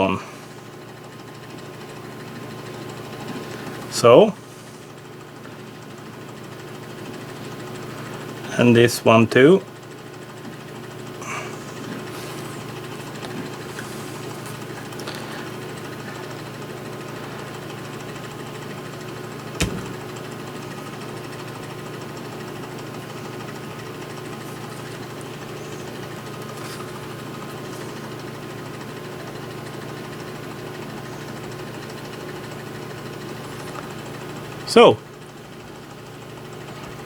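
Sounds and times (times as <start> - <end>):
machine hum: 10.5 - 28.6
sharp click: 19.6 - 20.1.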